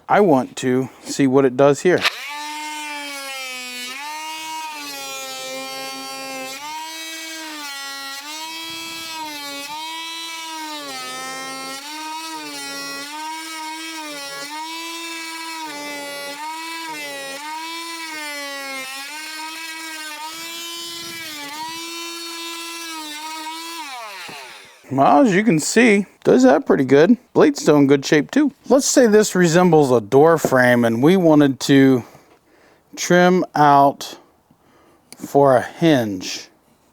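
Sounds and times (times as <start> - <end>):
oscillating tool cutting wood: 2.0 - 25.3.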